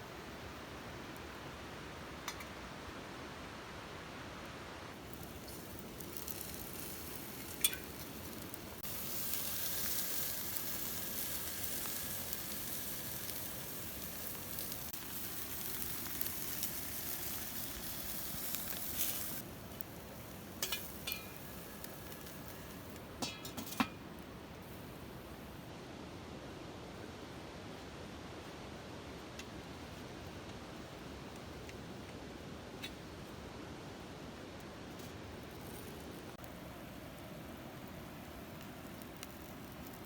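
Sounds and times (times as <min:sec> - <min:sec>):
food sizzling in a pan: 0:05.0 - 0:25.0.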